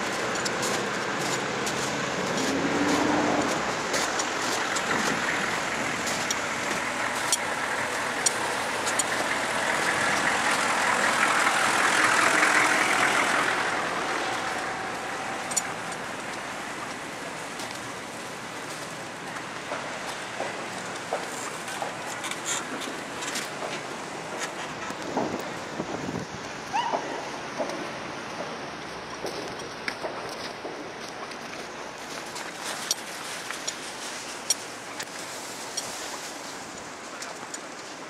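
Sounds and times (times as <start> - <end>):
traffic passing: 0.0 - 38.0
scattered clicks: 7.2 - 10.0, 15.4 - 17.0.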